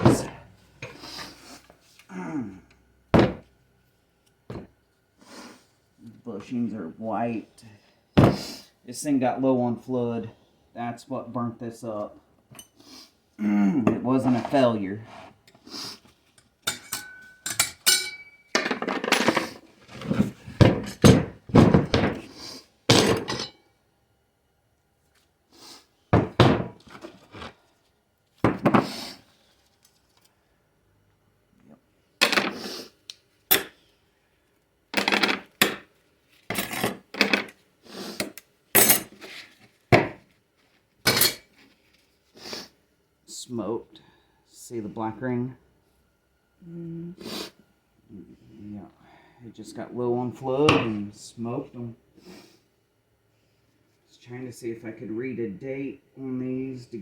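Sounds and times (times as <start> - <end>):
metal parts clanking: 22.9 - 23.6.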